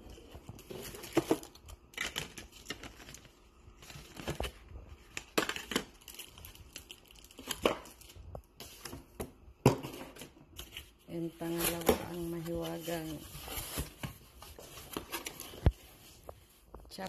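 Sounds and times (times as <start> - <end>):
packaging crinkling and tearing: 0.1 - 9.0.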